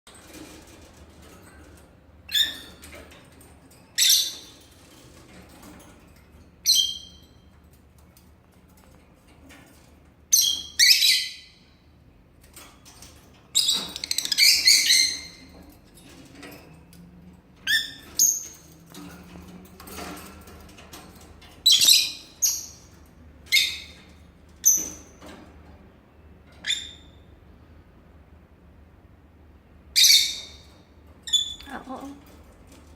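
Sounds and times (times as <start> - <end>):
bird chirping and squawking: 10.4 - 11.6, 13.6 - 15.5, 30.0 - 30.7.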